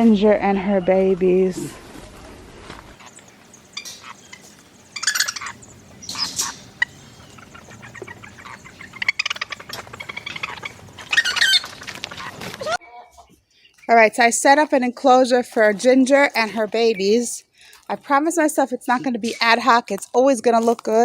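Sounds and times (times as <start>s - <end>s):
hen and chicks calling: 3.0s - 14.1s.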